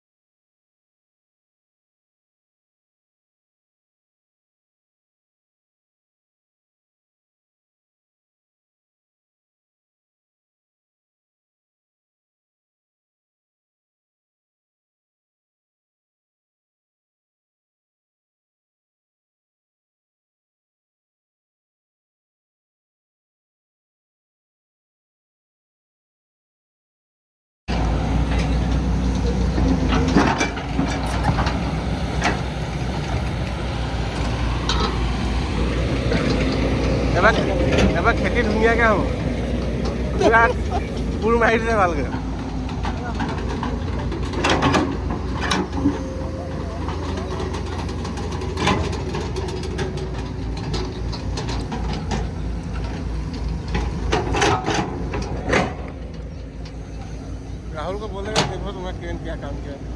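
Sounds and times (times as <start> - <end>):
diesel excavator engine rumbling: 27.7 - 59.9.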